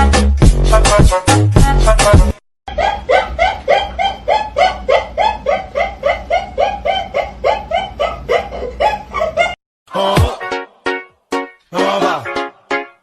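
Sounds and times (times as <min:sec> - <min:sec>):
rapid laughter: 0:02.7 - 0:09.6.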